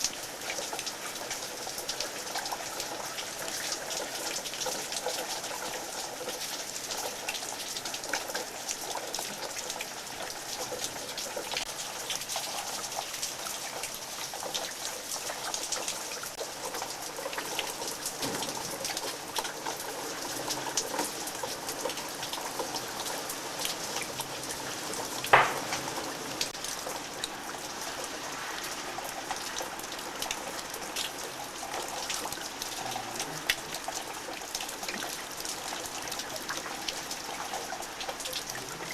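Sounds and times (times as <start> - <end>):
steady rain falling: 0.0 - 38.9
sharp knock: 25.3 - 25.7.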